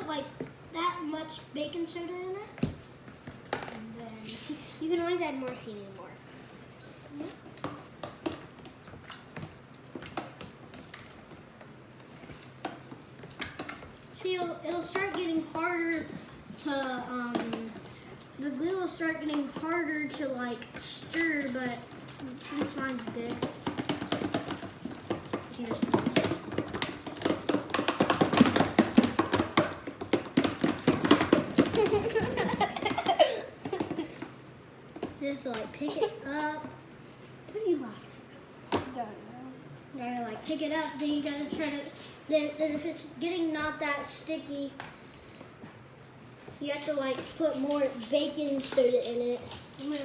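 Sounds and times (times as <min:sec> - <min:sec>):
utensil clinking and scraping bowl: 0:14.8 - 0:32.6.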